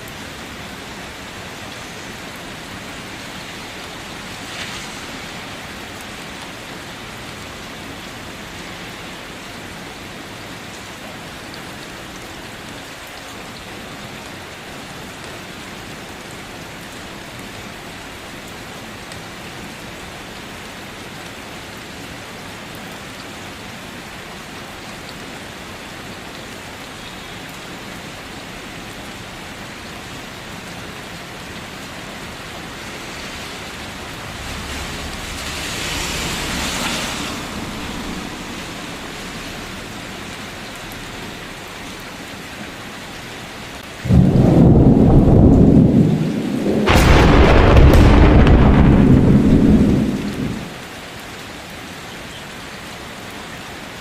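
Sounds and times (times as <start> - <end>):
steady rainfall: 0.0 - 54.0
distant thunder rumble: 44.0 - 50.7.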